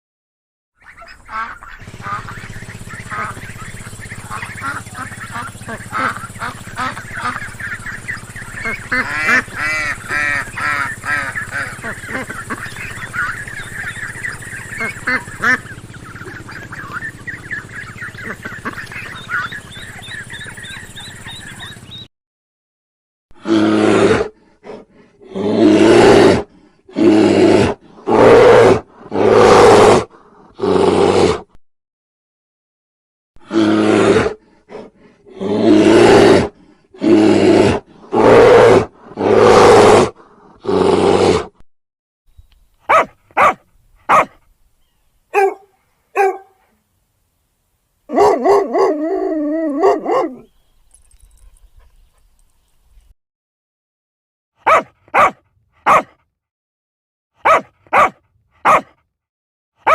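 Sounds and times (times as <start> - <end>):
large animal harsh low calls: 23.4 - 31.6, 33.4 - 41.6.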